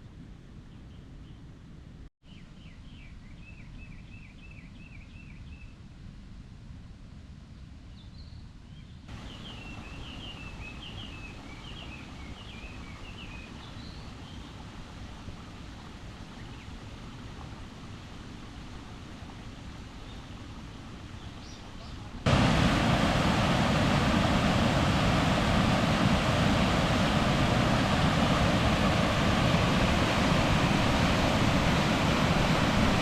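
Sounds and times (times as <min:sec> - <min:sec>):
steady low rumble: 0:22.3 - 0:33.0.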